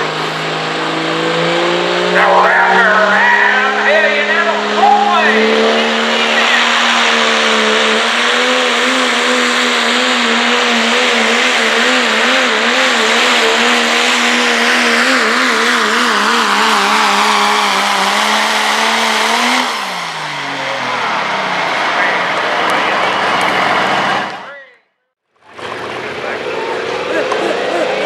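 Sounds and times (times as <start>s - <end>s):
turbo and exhaust hissing: 0.0s - 0.9s
diesel truck engine at full throttle: 0.0s - 24.7s, 25.3s - 28.0s.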